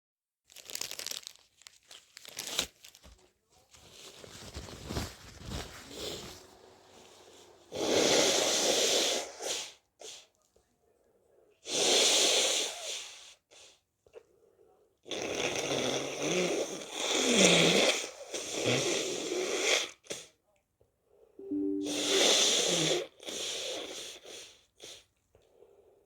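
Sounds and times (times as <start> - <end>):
tissue crinkling: 0.5 - 6.7.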